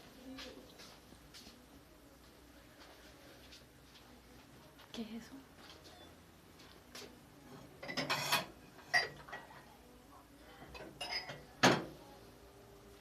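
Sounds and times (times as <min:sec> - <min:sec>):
dishes and utensils clinking: 0:07.5 - 0:09.7, 0:10.6 - 0:12.0.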